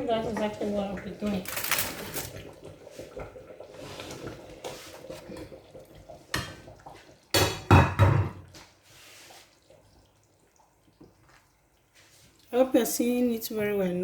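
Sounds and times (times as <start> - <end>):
rustling: 1.4 - 2.4
kitchen things knocking: 7.4 - 8.4.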